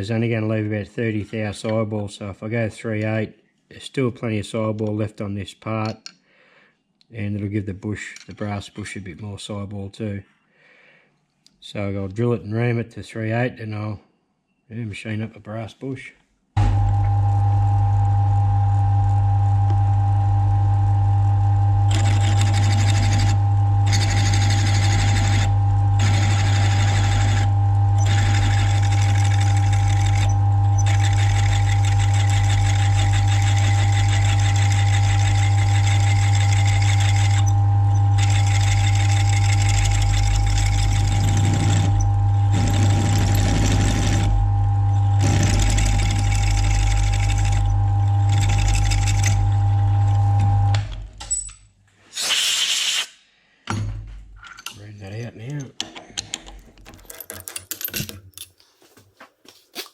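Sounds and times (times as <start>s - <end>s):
mill drill humming and whining: 16.6s - 51.0s
drill bit cutting metal: 21.8s - 50.8s.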